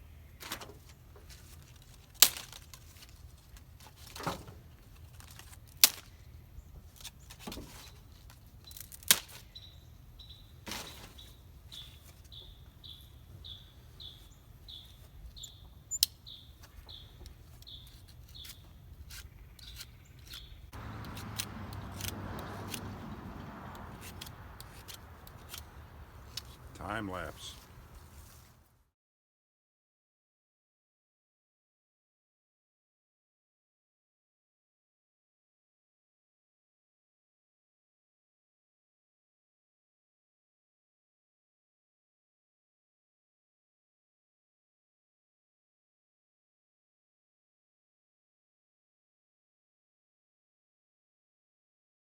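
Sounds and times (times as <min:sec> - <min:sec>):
branch wood snapping: 0:01.8 - 0:03.2, 0:05.1 - 0:06.2, 0:08.7 - 0:09.4, 0:19.7 - 0:28.4
bird chirping: 0:09.4 - 0:28.2.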